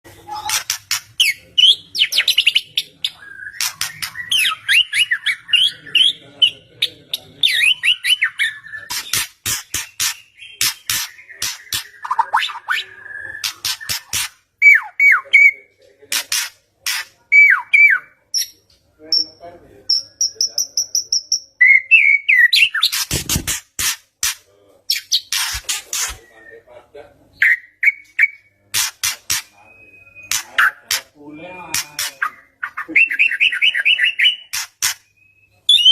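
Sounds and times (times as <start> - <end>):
bird whistling song: 1.2 - 6.1, 20.2 - 23.0, 27.4 - 28.6, 29.6 - 30.9, 32.2 - 35.9
harsh bird clicking notes: 3.5 - 4.5
bird singing whistled notes: 29.6 - 30.6, 32.3 - 35.9.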